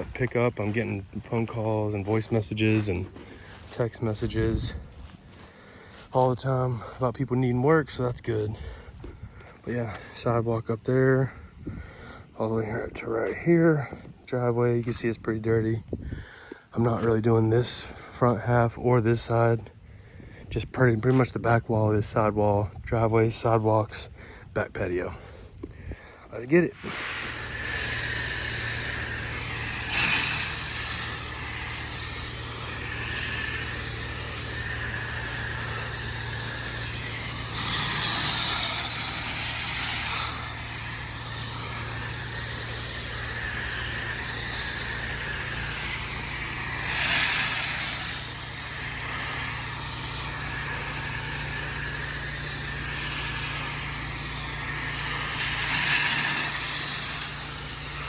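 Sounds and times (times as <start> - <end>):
pressure washer engine running: 0.0 - 7.0, 26.4 - 58.0
high-pressure water spray hiss: 26.5 - 58.0.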